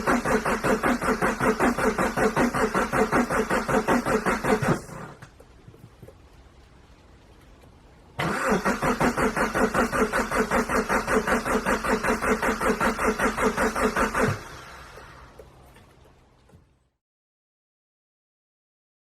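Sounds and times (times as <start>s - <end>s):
diesel engine cranking: 0.0s - 5.4s, 8.2s - 15.5s.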